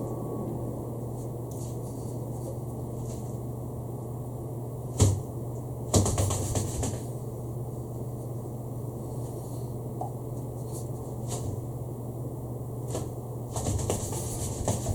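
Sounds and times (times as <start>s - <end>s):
low background hum: 0.0s - 14.9s.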